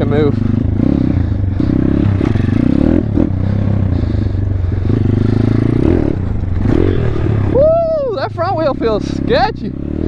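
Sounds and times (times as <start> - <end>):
pit bike engine revving: 0.0 - 10.0.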